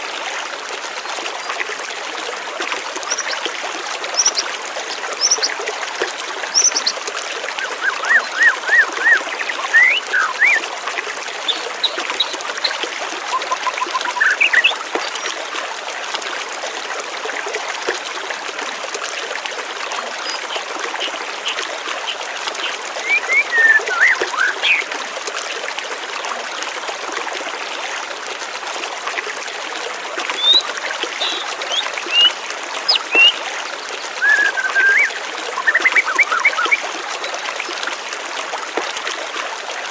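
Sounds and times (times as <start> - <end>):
stream water trickling: 0.0 - 39.9
small birds chirping: 3.1 - 3.4, 4.2 - 5.6, 6.5 - 7.0, 30.4 - 33.4.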